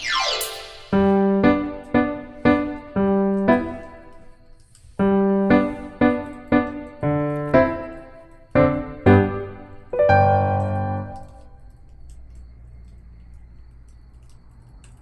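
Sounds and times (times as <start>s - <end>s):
slow piano melody: 0.0s - 11.6s.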